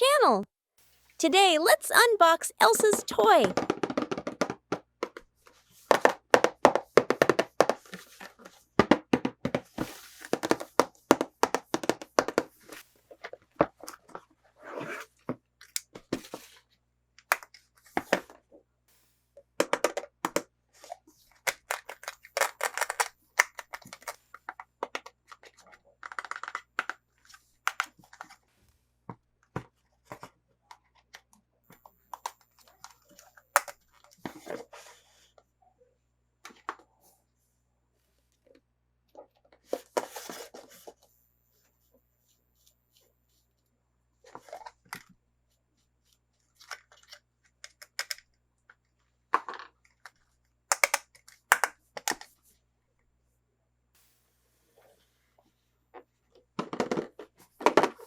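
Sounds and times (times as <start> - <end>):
sharp clicks and taps: 1.2 - 3.6.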